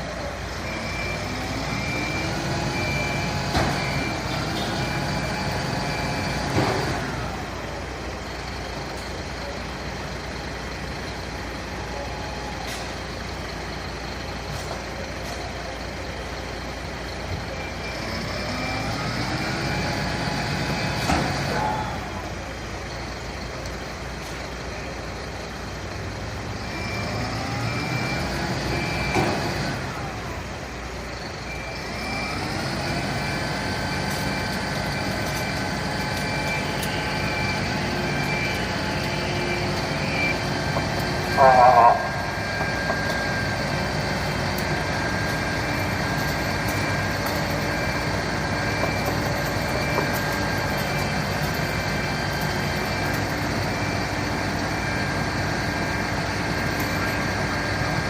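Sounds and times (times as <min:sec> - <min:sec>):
fire truck engine: 0:00.0 - 0:58.0
warning beeper beeps: 0:00.5 - 0:07.0, 0:31.4 - 0:57.6.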